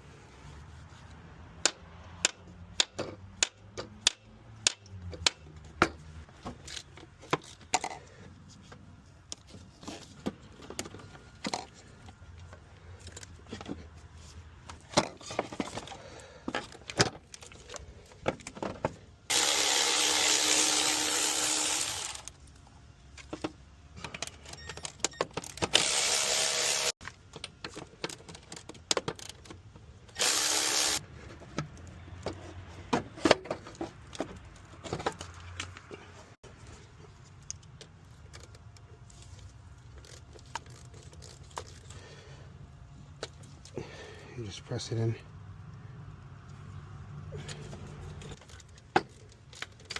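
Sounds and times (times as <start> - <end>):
power tool bursts: 19.3 - 22.3, 25.7 - 27.0, 30.2 - 31.0.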